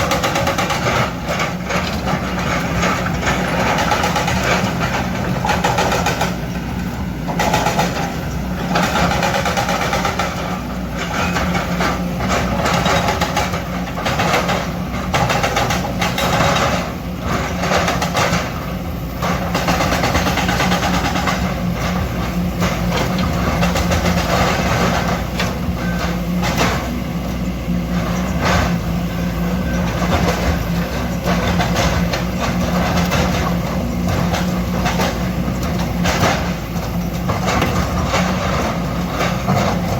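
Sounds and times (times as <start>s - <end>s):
excavator diesel engine running: 0.0s - 39.9s
rock and metal knocks and scrapes: 31.3s - 39.9s.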